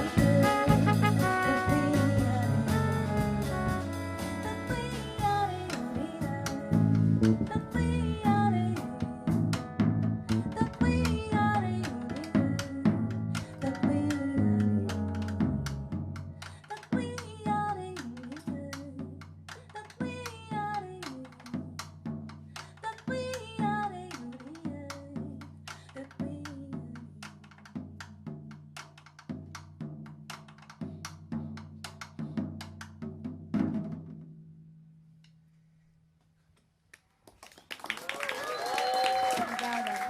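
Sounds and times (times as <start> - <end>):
piano: 0.0 - 27.0
drum kit strokes: 0.0 - 34.2
bass: 0.0 - 37.1
wordless female vocal: 4.4 - 9.4, 10.3 - 15.0, 22.6 - 27.1.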